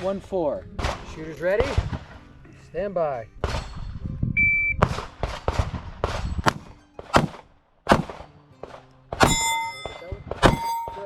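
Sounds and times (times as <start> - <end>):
pistol shots: 4.8 - 9.5.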